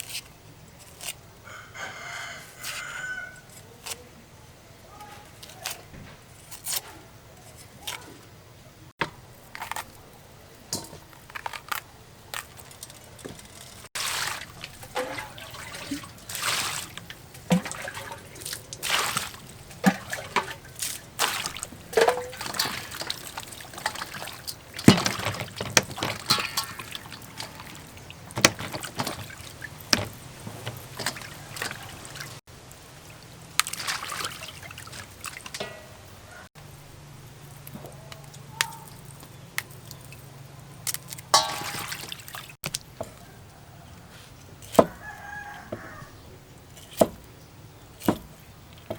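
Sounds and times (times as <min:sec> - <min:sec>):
water splashing and sloshing: 0:09.0 - 0:36.5, 0:37.5 - 0:43.8, 0:46.8 - 0:47.3, 0:47.9 - 0:48.9
sharp knocks and clatters: 0:21.2 - 0:31.8.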